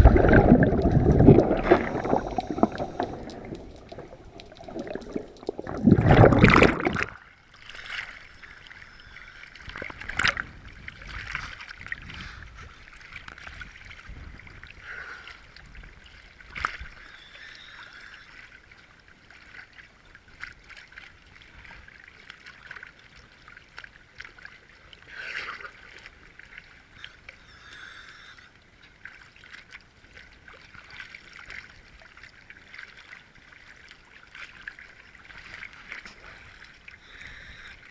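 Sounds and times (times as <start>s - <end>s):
faint water hiss: 0.0s - 5.8s, 7.5s - 19.6s, 24.7s - 29.5s, 32.0s - 37.9s
sharp underwater clicks: 0.0s - 7.2s
rush of bubbles underwater: 0.0s - 7.3s.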